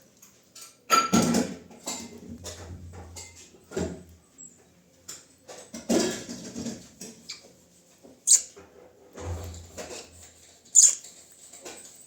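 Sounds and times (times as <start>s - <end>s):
budgerigars chirping: 10.8s - 11.0s.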